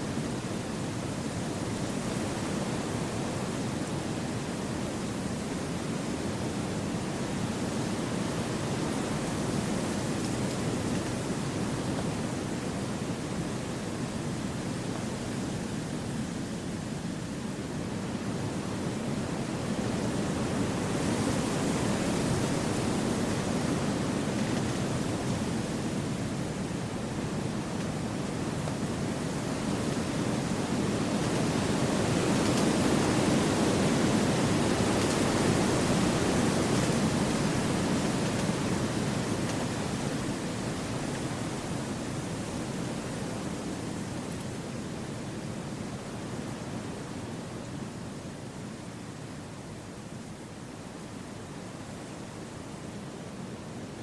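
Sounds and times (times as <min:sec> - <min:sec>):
wind through forest trees: 0:00.0 - 0:54.0.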